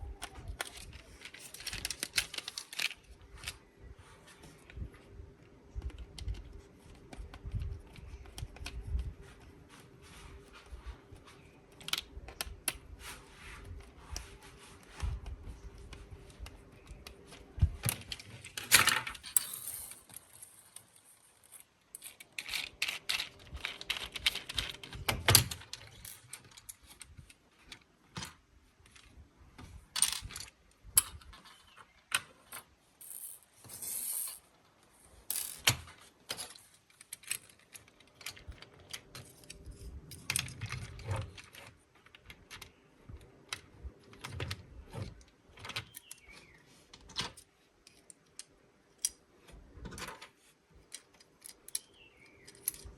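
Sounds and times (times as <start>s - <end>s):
plastic toy parts clicking: 0.1s - 3.6s, 17.8s - 29.1s.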